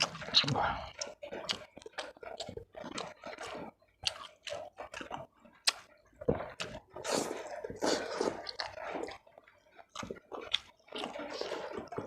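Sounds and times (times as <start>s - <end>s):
lip and teeth clicks: 0.0s - 5.9s
person chewing food: 0.0s - 12.0s.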